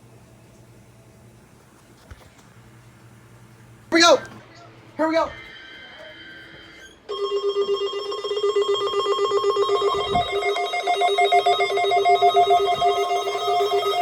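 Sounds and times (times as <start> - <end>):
pulsing electronic alert tone: 8.6 - 14.0
higher electronic tone: 8.7 - 14.0.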